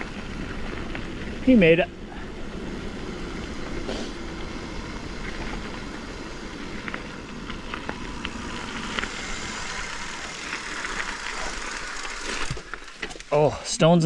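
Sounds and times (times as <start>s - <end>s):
bike tyres rumbling on gravel: 0.0s - 14.0s.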